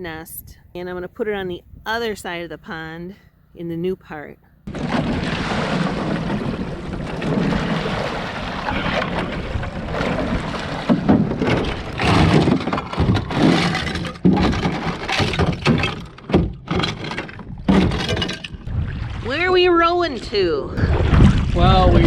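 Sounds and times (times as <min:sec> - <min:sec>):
wind buffeting microphone: 0:04.7 - 0:12.0, 0:18.4 - 0:22.0
oars splashing and knocking: 0:04.7 - 0:20.2.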